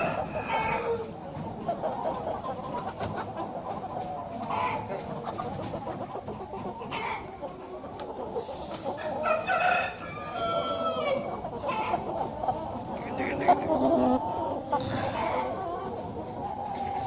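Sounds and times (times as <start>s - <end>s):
chickens clucking: 0.0s - 17.0s
rooster crowing: 9.0s - 11.3s.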